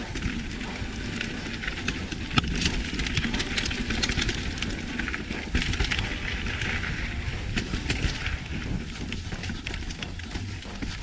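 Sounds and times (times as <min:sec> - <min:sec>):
bike clicks and rattles: 0:00.0 - 0:11.0
wind and tyres rumbling: 0:00.0 - 0:11.0.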